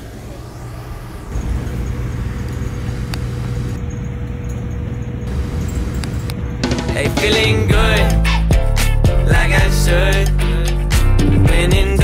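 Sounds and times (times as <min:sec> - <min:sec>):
faint steady hum: 0:00.0 - 0:06.7
vehicle engine rumble: 0:00.0 - 0:08.2.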